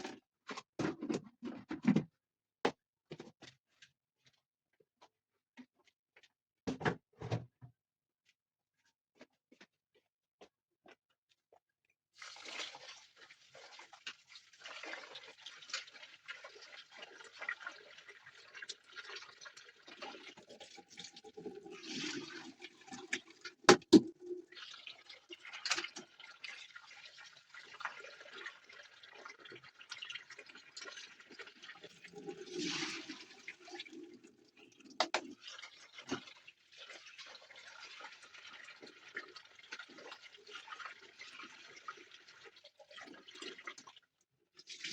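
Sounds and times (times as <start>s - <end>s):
water splashing and trickling: 12.2s - 44.9s.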